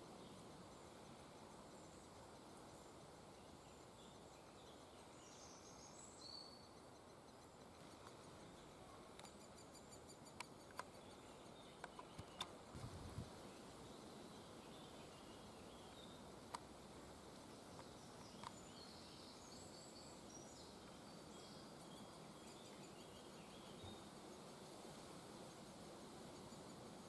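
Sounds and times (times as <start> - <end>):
low background hiss: 0.0 - 27.0
sharp clicks: 10.4 - 10.9, 11.8 - 12.6.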